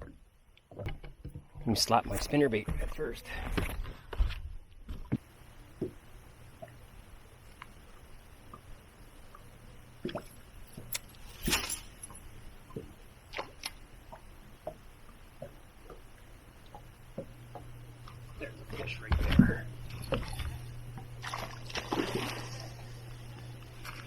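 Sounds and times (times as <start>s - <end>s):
knocks and clicks in a boat: 0.0s - 5.2s, 12.7s - 16.1s, 16.7s - 21.1s
faint low hum: 0.0s - 24.0s.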